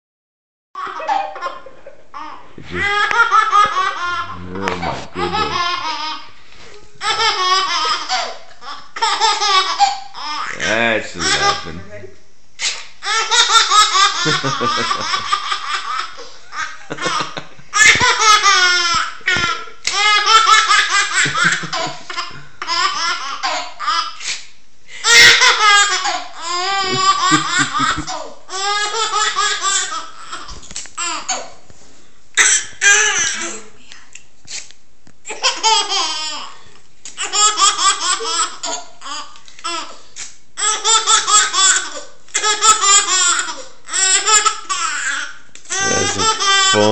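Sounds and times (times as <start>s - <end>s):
girl giggling: 0.9s - 6.0s, 13.5s - 18.6s, 21.1s - 22.5s, 26.6s - 28.3s, 45.8s - 46.9s.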